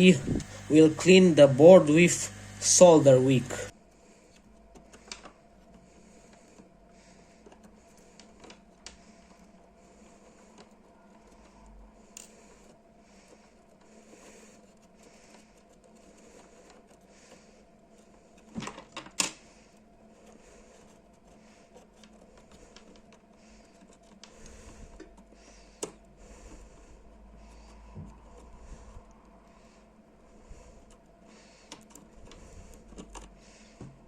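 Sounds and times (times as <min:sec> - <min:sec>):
tool clicks and taps: 0:25.0 - 0:26.1.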